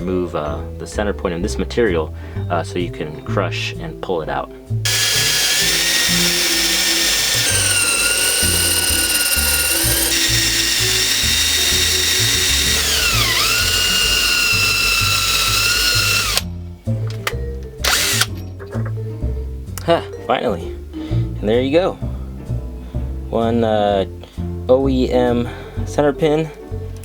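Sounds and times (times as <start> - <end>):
electric drill whining: 4.9 - 16.5, 17.8 - 18.3.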